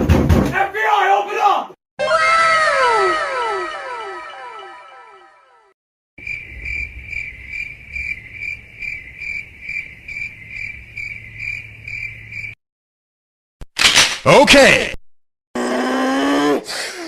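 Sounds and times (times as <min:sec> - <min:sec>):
cricket chirping: 0:06.2 - 0:12.6.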